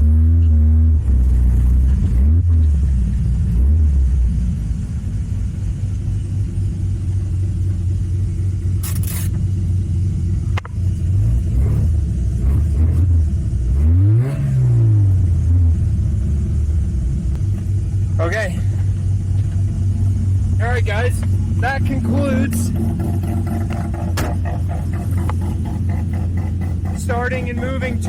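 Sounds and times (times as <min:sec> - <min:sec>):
rotary engine idling: 0:15.7 - 0:28.0.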